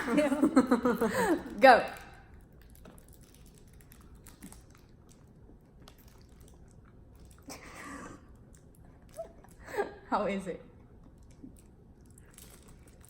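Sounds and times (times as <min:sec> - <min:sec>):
person chewing: 0:02.5 - 0:07.6.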